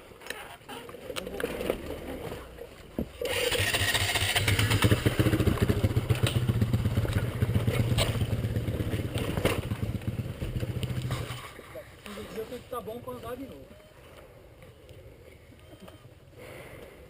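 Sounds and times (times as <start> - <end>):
dirt bike engine idling: 3.2 - 11.6.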